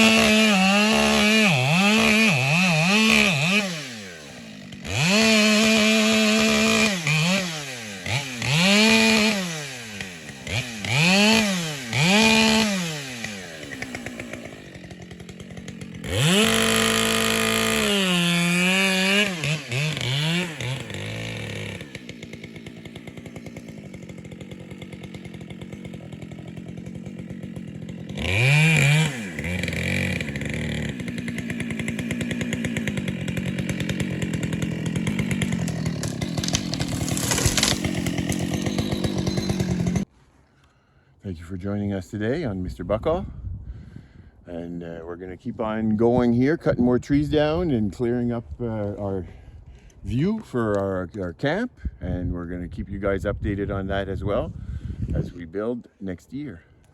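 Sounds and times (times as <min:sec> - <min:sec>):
chainsaw engine revving: 0:00.0 - 0:40.1.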